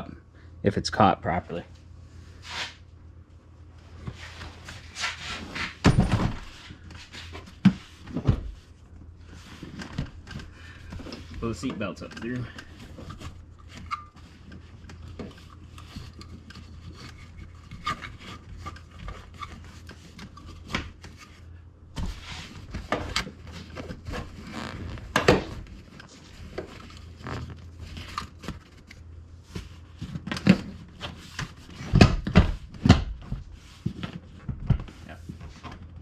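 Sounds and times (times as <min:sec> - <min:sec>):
seat belt webbing rubbing: 0:24.2 - 0:25.5.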